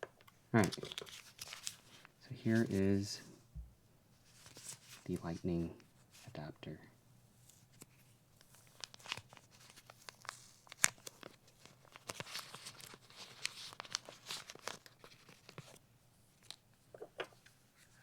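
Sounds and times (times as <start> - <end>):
packaging tearing and crinkling: 0.6 - 1.8, 8.7 - 15.8.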